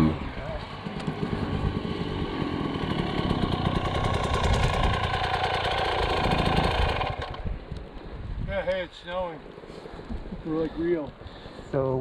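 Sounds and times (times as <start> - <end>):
dirt bike engine low revs: 0.0 - 7.6.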